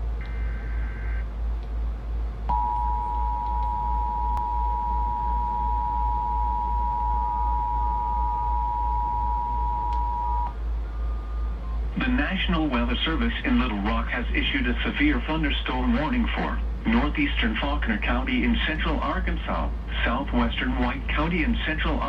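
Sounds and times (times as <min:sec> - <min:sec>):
steady low hum: 0:00.0 - 0:22.0
two-tone attention signal: 0:02.5 - 0:11.8.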